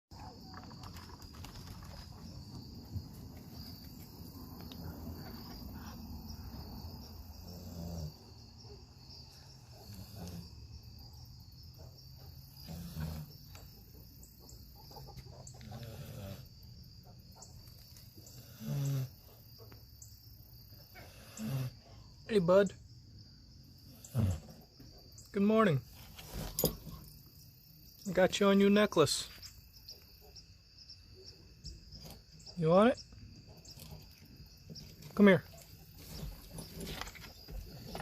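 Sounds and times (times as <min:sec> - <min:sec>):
high insect trill: 0:00.1 - 0:38.0
dog snoring: 0:07.2 - 0:08.4, 0:09.6 - 0:10.6, 0:12.2 - 0:13.6, 0:15.6 - 0:16.6, 0:18.3 - 0:19.4, 0:20.9 - 0:22.0, 0:23.8 - 0:24.8.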